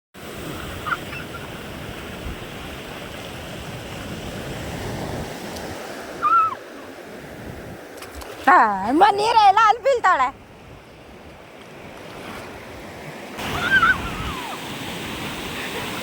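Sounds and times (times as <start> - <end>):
sea waves breaking on beach: 0.2 - 16.0
brief high calls: 6.2 - 6.7, 13.4 - 14.6.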